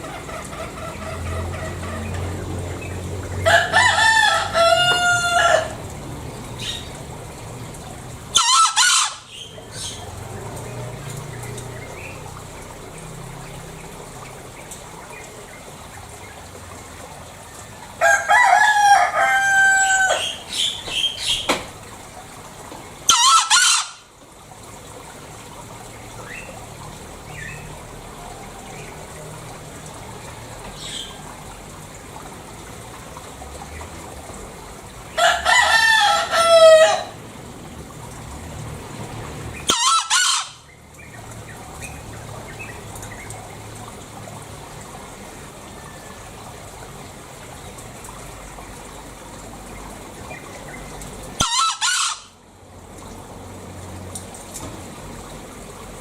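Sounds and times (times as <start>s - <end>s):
junglefowl crowing: 0.0s - 2.3s, 3.4s - 5.9s, 8.3s - 10.0s, 18.0s - 21.4s, 23.1s - 24.1s, 35.1s - 37.2s, 39.6s - 40.7s, 51.4s - 52.4s.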